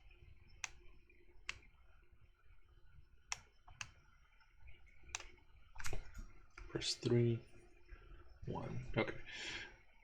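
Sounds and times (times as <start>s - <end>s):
mouse and keyboard clicks: 0.6s - 0.9s, 1.5s - 1.7s, 3.3s - 4.0s, 5.1s - 5.4s.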